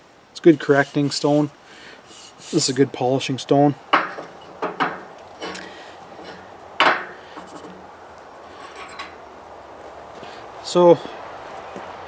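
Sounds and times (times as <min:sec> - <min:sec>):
metal clinks and scraping: 0:04.3 - 0:07.8, 0:08.5 - 0:09.2.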